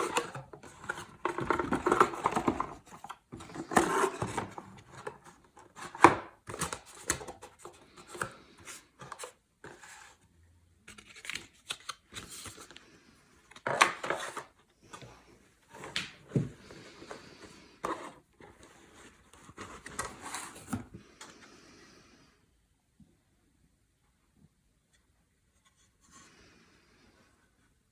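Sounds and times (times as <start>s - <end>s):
cardboard packaging rustling: 0.0s - 10.2s, 13.5s - 21.0s.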